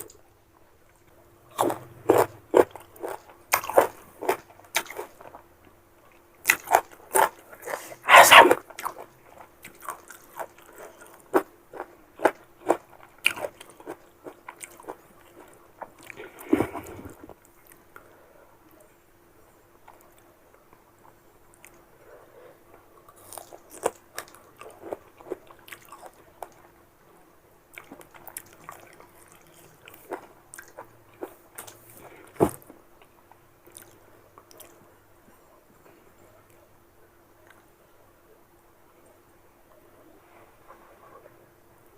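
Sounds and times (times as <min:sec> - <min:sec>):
crunching and chewing mango: 0:01.1 - 0:18.0, 0:23.0 - 0:26.7, 0:27.7 - 0:34.9.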